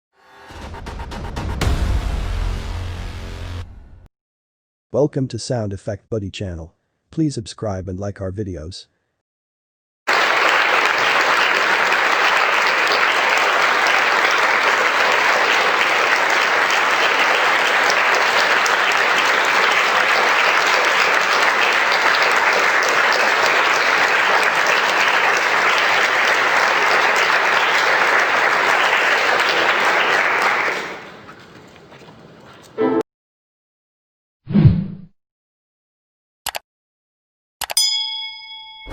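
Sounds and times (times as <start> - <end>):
crowd applauding: 10.1 - 33.0.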